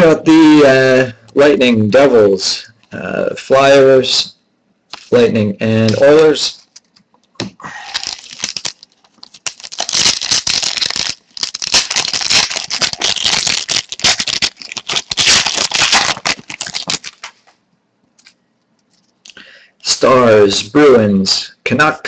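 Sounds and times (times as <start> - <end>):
trading cards snapping and rustling: 5.8 - 17.4.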